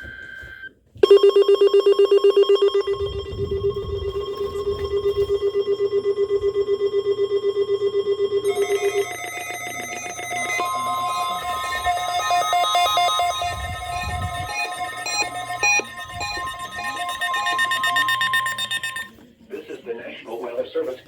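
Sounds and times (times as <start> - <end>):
rapidly pulsing alarm beep: 1.0 - 19.2
higher electronic tones: 1.9 - 7.4, 8.1 - 19.1.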